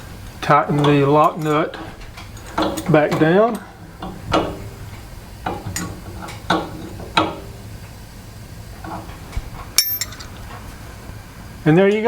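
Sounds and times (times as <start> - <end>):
wrench clinking on metal nut: 9.8 - 10.3.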